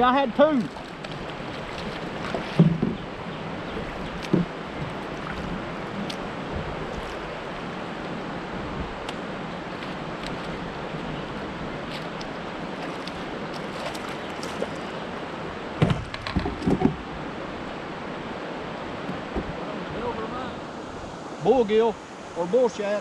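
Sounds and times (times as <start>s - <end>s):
river water rushing: 0.0s - 23.0s
wind on microphone: 0.6s - 15.0s, 19.0s - 20.0s
sharp knocks: 2.4s - 3.0s, 15.8s - 17.0s.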